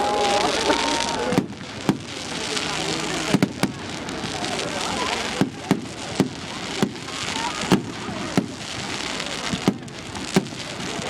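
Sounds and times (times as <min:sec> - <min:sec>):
fireworks crackling hiss: 0:00.0 - 0:11.0
fireworks shells bursting: 0:00.2 - 0:11.0.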